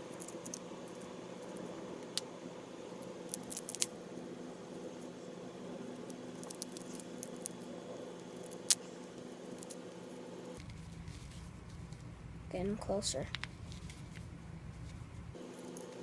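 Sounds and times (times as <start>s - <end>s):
steady low hum: 0.0s - 16.0s
scratchy rustling of string: 10.6s - 12.2s, 13.4s - 16.0s.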